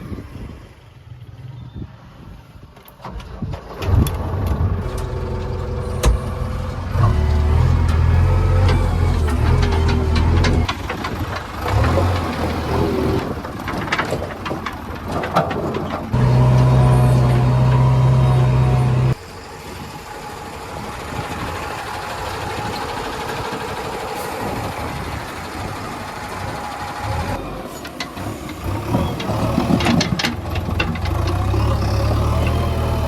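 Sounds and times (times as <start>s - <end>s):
backhoe diesel engine running: 3.6s - 33.0s
clanks and knocks: 5.8s - 18.0s, 27.8s - 31.7s.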